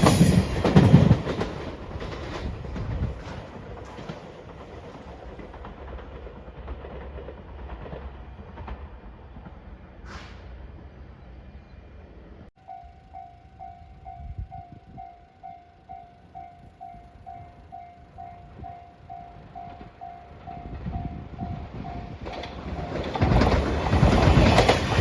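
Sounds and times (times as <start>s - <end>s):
wheels clicking over rail joints: 0.0s - 10.3s, 12.7s - 25.0s
train rumbling past: 0.0s - 25.0s
crossing warning bell ringing: 12.6s - 25.0s.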